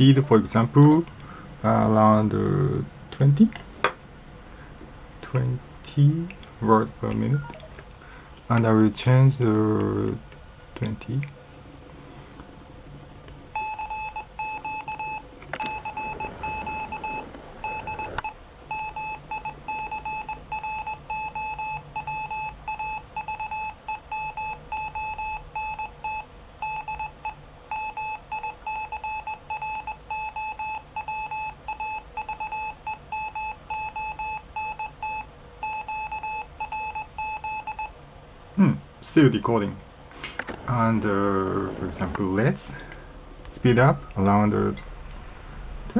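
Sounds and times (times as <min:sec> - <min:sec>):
morse code beeps: 0:07.3 - 0:07.8, 0:13.6 - 0:37.9.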